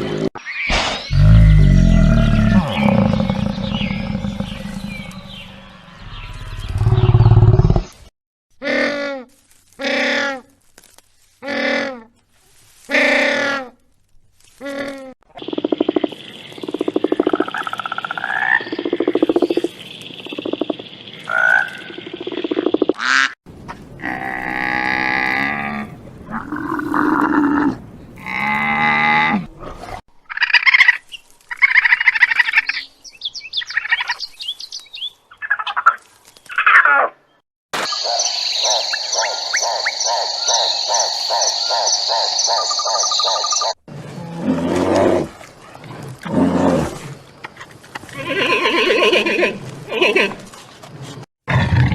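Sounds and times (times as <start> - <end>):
frogs croaking: 15.3 - 23.0, 37.8 - 43.8
animal calls: 37.8 - 43.8.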